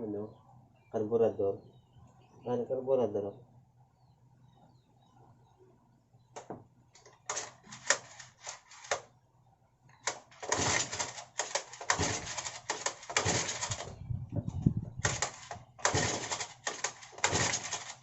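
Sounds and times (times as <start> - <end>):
recoil starter pulls: 10.0 - 14.0, 15.0 - 18.0.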